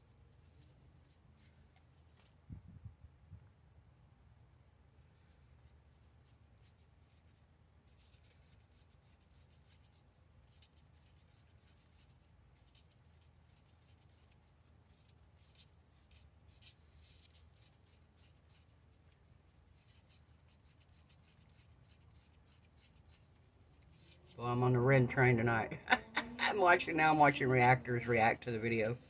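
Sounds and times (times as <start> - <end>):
low steady hum: 0.0 - 29.0
stir stick scraping in cup: 6.0 - 24.7.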